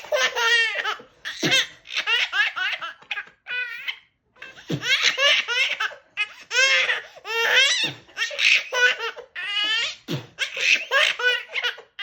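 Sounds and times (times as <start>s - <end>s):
baby laughing: 0.0s - 12.0s.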